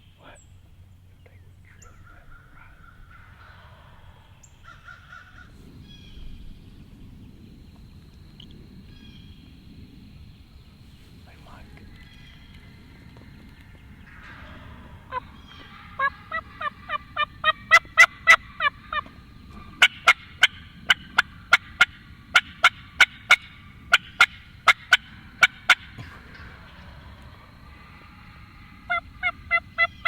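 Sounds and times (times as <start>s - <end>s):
turkey cutts: 11.5s - 30.0s
turkey yelping: 13.9s - 30.0s.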